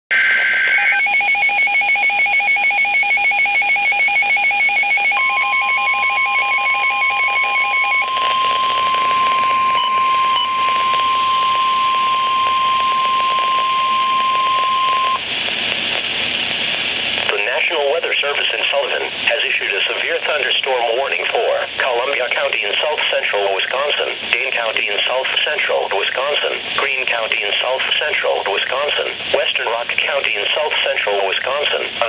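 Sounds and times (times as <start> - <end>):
steady warning tone: 0.1 - 15.3
warbling data tone: 0.1 - 15.3
alarm beeping rapidly: 0.2 - 15.2
radio hiss: 8.0 - 32.0.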